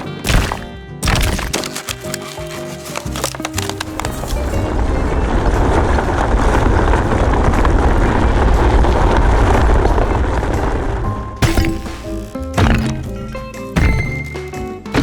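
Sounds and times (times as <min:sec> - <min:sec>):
long low rumbling noise: 0:04.4 - 0:11.4.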